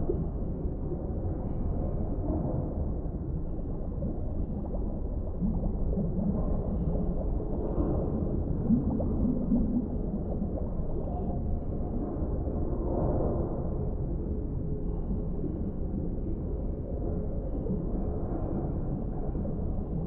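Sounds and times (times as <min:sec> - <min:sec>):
muffled low underwater rumble: 0:00.0 - 0:20.0.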